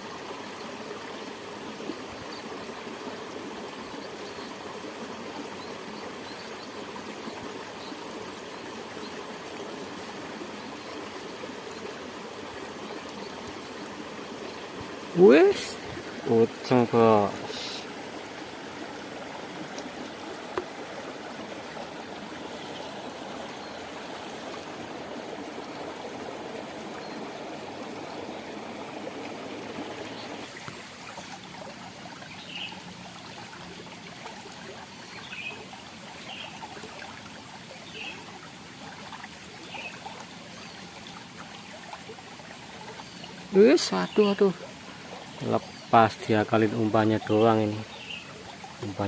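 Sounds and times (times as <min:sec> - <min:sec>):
stream water running: 0:00.0 - 0:49.0.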